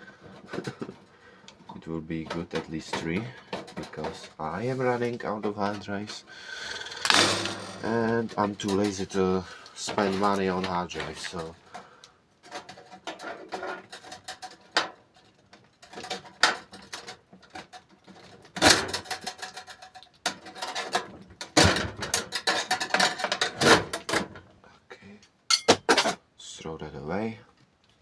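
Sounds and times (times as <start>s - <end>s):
computer parts clicking and rattling: 7.0s - 11.6s, 15.8s - 24.4s.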